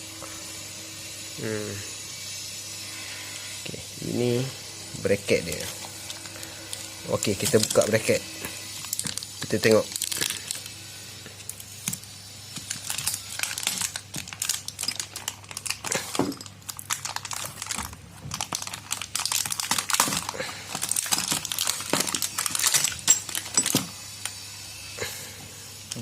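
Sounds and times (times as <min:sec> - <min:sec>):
packaging wrap crinkling: 0:05.4 - 0:24.3.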